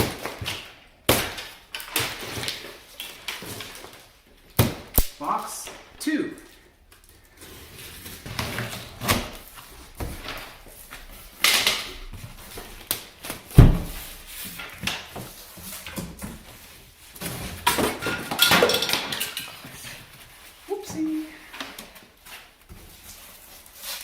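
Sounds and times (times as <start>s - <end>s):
heavy thump: 13.5s - 14.2s
cardboard scraping and tearing: 22.3s - 24.0s.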